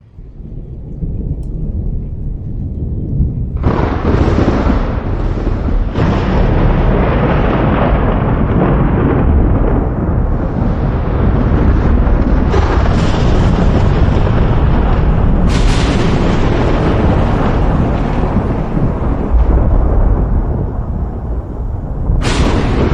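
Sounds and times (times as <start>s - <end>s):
thunder rumbling: 0.0s - 22.9s
sharp thunder cracks: 0.4s - 22.9s.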